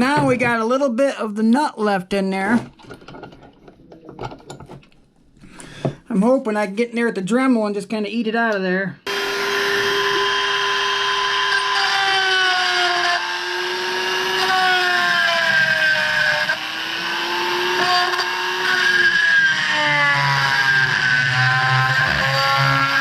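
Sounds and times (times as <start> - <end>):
rotary tool grinding metal: 9.1 - 23.0.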